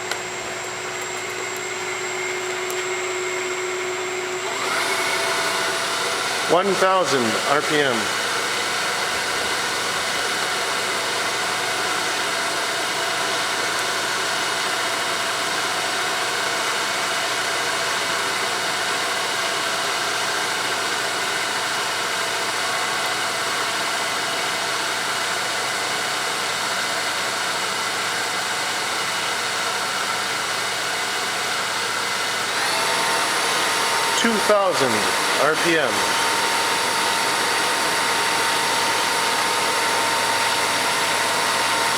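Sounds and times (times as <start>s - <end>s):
mill spindle humming: 0.0s - 11.4s, 32.5s - 41.9s.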